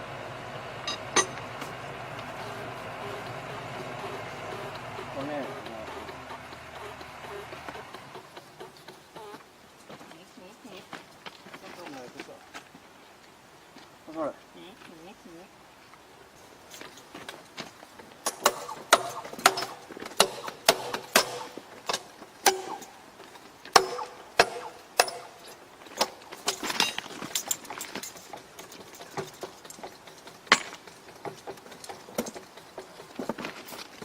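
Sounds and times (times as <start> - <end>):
hand tools striking steel: 0.9 - 9.4, 18.2 - 34.0.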